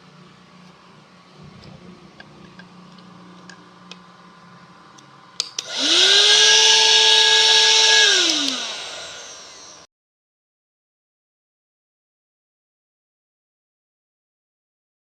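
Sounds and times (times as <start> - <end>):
vacuum cleaner switch click: 5.4 - 9.3
handheld vacuum motor whining: 5.6 - 9.9.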